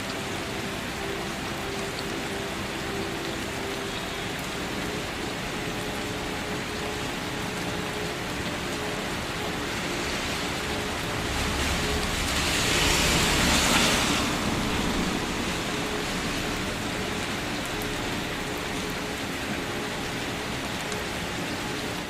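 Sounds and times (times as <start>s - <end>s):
steady rain falling: 0.0s - 22.0s
rushing swell with low rumble: 9.9s - 18.4s.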